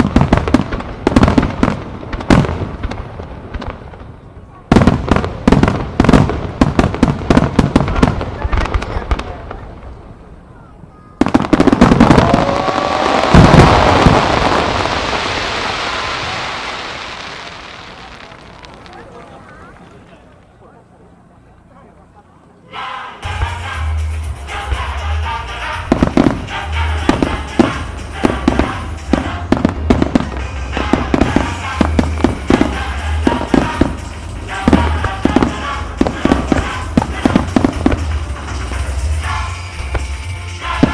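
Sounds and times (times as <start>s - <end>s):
fireworks bursting: 0.0s - 10.4s, 11.2s - 20.1s, 23.2s - 40.9s
rumbling echo: 11.2s - 19.2s, 23.2s - 40.9s
music playing: 22.7s - 40.9s.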